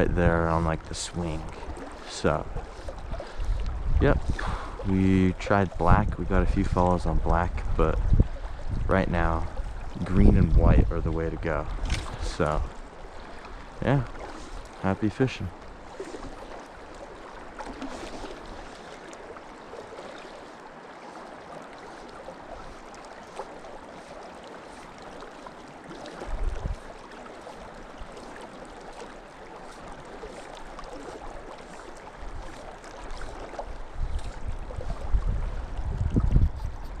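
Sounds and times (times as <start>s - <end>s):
low rumbles on microphone: 2.2s - 12.7s, 33.9s - 37.0s.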